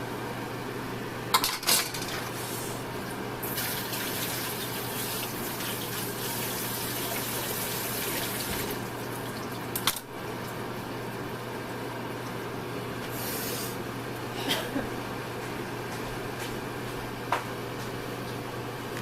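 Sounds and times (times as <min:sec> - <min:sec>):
tap running into sink: 0:08.4 - 0:08.8.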